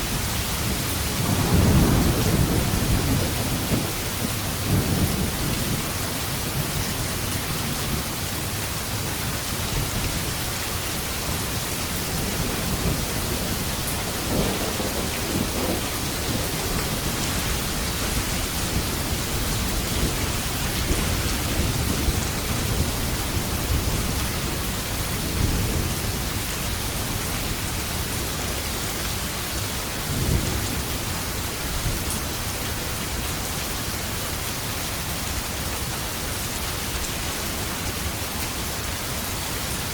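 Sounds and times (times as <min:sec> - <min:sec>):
heavy rain: 0:00.0 - 0:39.9
thunder rumbling: 0:00.1 - 0:06.8, 0:11.2 - 0:28.3.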